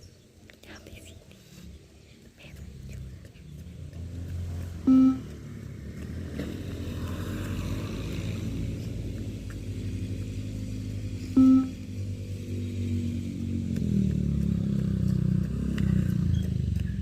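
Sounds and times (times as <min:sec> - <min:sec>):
vehicle engine running: 0:01.7 - 0:17.0
short electronic beep: 0:04.9 - 0:05.2, 0:11.4 - 0:11.8.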